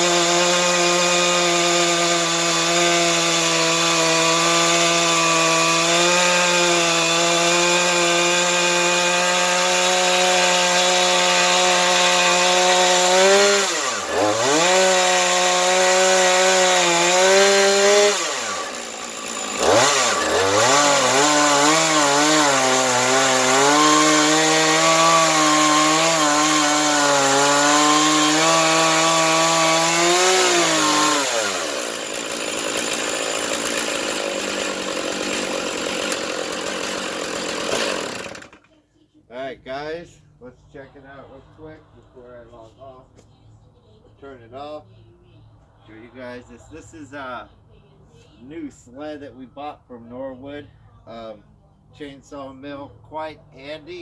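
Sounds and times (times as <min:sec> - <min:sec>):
chainsaw cutting wood: 0:00.0 - 0:38.8.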